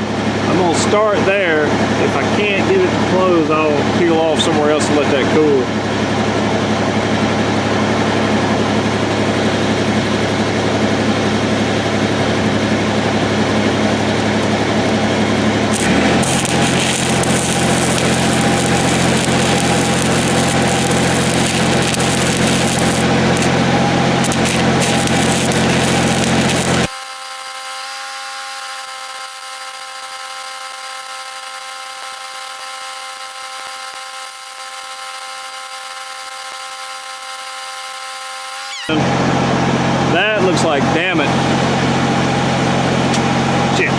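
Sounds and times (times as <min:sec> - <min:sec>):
welding machine hum: 0:05.8 - 0:40.0
welding arc crackling hiss: 0:13.5 - 0:38.9.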